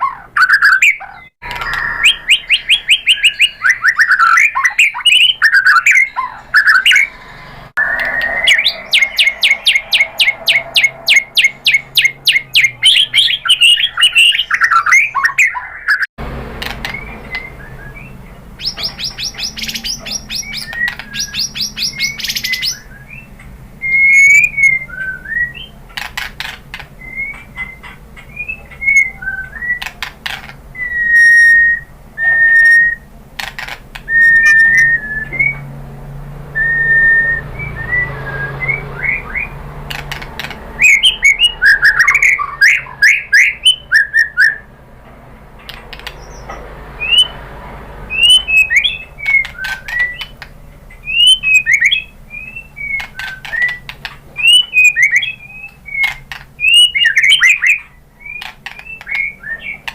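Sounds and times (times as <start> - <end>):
bird sharp clicking notes: 0.0 - 7.0, 16.6 - 31.5, 45.6 - 47.4, 48.1 - 59.9
bird singing repeated notes: 0.0 - 44.8, 45.5 - 59.9.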